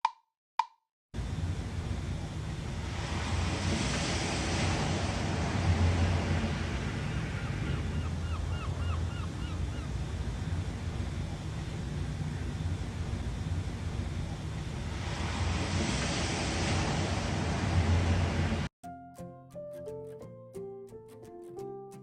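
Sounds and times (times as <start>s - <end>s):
synthesised ocean waves: 1.2s - 18.7s.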